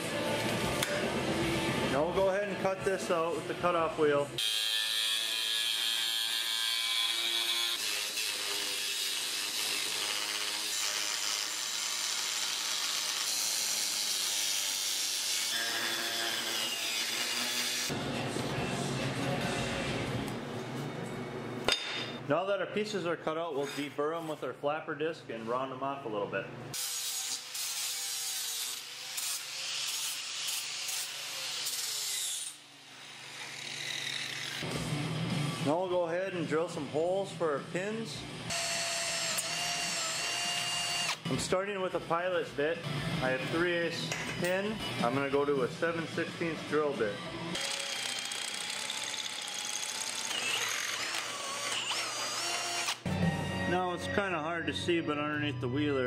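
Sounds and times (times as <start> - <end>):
angle grinder grinding steel: 4.4 - 18.0, 26.8 - 34.6, 45.7 - 53.1.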